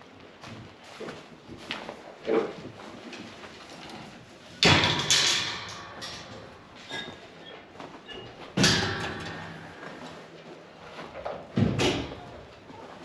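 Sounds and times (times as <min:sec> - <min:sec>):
loud bang with rattling clatter: 0:04.6 - 0:06.6, 0:08.6 - 0:09.9.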